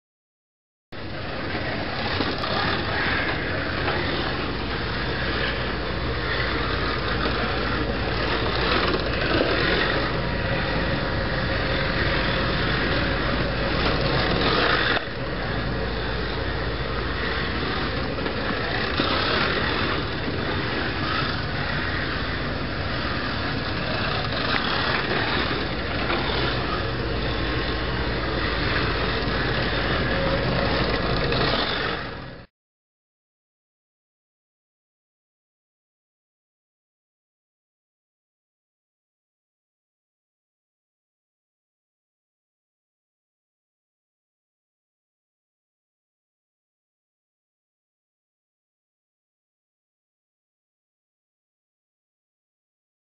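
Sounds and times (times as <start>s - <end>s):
slot car motor whirring: 1.0s - 32.5s.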